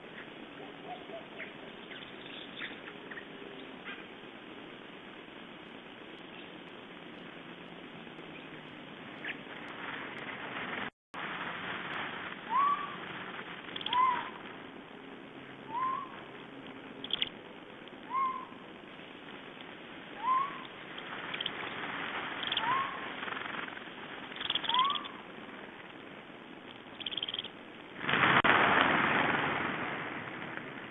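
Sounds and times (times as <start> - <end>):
rising whistled call: 12.5 - 13.0, 13.8 - 14.4, 15.6 - 16.2, 18.1 - 18.6, 20.2 - 20.7, 22.4 - 23.0, 24.4 - 25.2.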